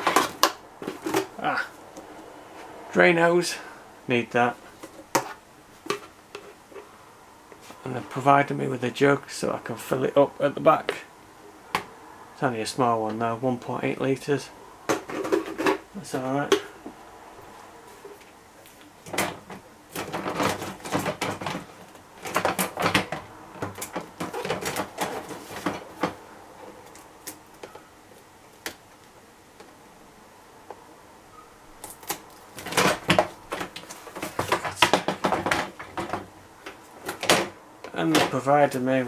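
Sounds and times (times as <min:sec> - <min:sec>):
plastic clicking and clattering: 0:19.0 - 0:26.2, 0:32.1 - 0:38.4.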